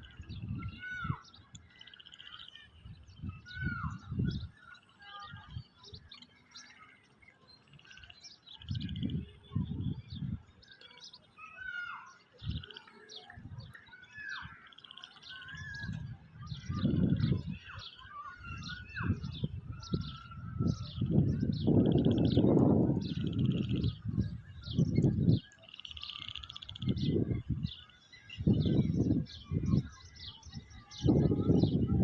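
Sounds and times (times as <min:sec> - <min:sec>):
small birds chirping: 0:00.0 - 0:32.0
wind gusts rumbling: 0:19.0 - 0:25.4, 0:30.6 - 0:32.0.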